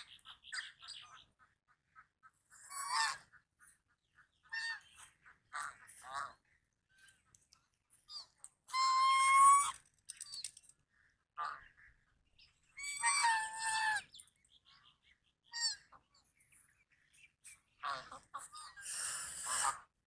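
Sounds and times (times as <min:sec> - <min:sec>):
goose honking: 0:01.9 - 0:03.5, 0:04.1 - 0:06.4, 0:17.8 - 0:19.9.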